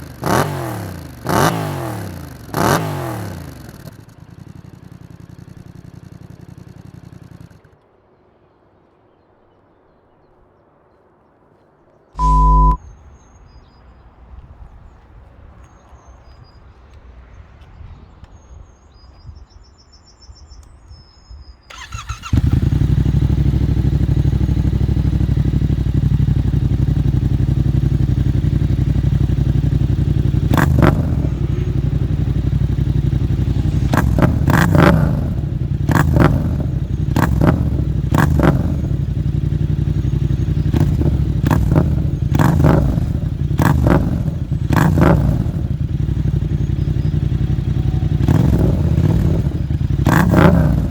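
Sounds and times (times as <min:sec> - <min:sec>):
motorcycle engine starting and revving: 0:00.0 - 0:07.8, 0:12.2 - 0:12.8, 0:21.7 - 0:50.9
faint birds chirping: 0:03.5 - 0:50.9.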